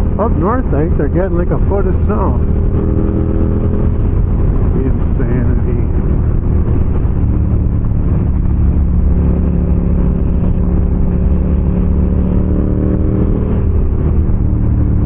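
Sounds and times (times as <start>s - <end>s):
low wind rush: 0.0s - 15.0s
motorcycle engine cruising: 0.0s - 15.0s.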